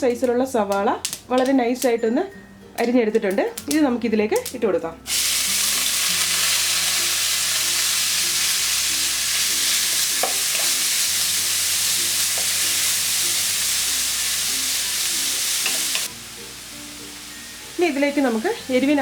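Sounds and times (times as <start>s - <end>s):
onion sizzling in hot oil: 4.4s - 19.0s.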